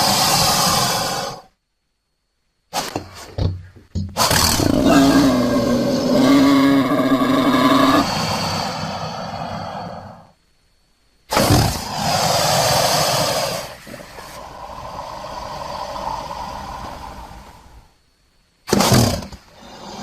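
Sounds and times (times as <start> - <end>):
creature call: 0.0 - 1.5, 4.2 - 10.4, 11.3 - 17.9.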